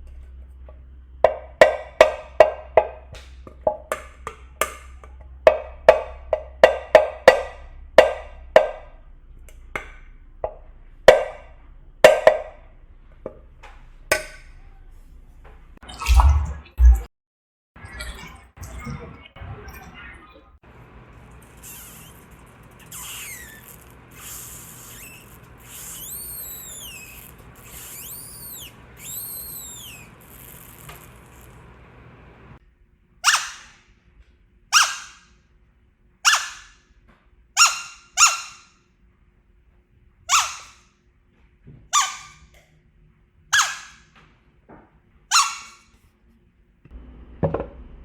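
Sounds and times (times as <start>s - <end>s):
chirping squeaks: 21.4s - 31.5s
sharp squeaks: 21.4s - 31.6s, 40.3s - 40.8s, 42.0s - 42.5s.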